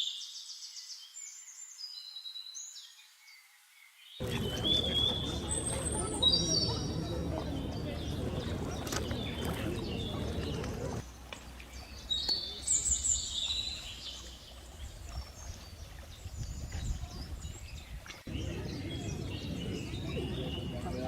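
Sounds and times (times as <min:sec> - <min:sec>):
low rumbling noise: 0:04.2 - 0:11.0, 0:18.3 - 0:21.0
birds chirping: 0:04.2 - 0:21.0.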